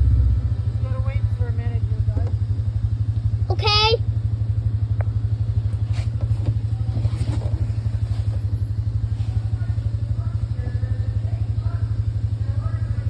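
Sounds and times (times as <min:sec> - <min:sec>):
faint voices: 0:06.5 - 0:13.0.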